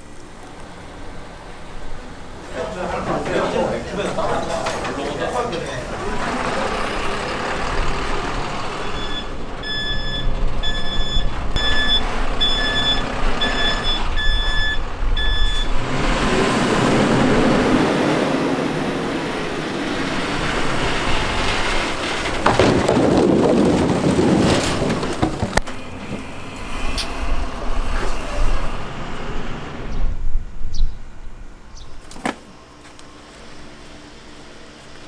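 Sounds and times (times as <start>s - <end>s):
heavy vehicle engine running: 0.0s - 30.2s
work noise: 0.0s - 30.3s
reversing alarm beeping: 8.8s - 15.8s.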